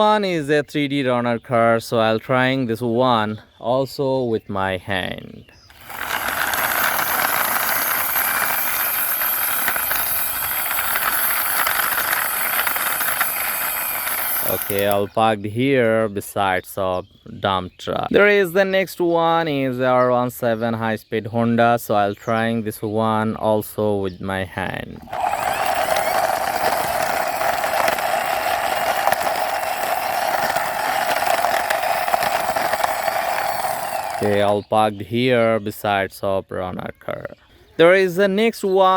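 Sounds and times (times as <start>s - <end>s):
toy car wheels rolling: 5.7s - 15.1s, 25.0s - 34.6s.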